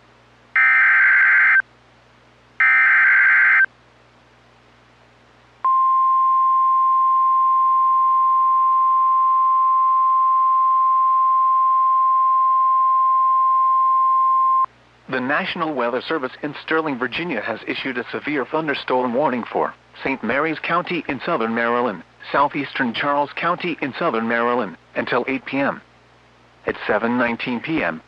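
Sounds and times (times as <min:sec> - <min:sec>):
steady warning alarm tone: 0:00.6 - 0:01.6, 0:02.6 - 0:03.7.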